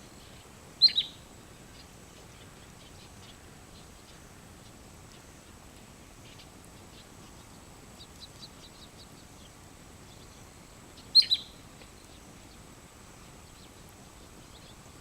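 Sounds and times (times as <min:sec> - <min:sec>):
bird chirping: 0:00.2 - 0:04.2, 0:11.0 - 0:12.6.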